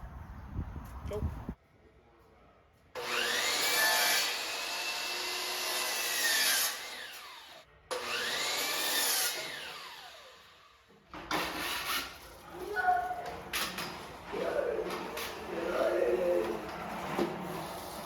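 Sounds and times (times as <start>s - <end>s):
electric saw cutting wood: 3.0s - 12.1s.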